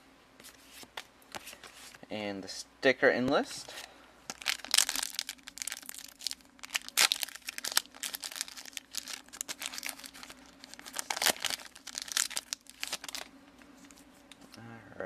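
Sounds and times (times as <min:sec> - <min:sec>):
wrapper tearing and crinkling: 0:04.3 - 0:13.3.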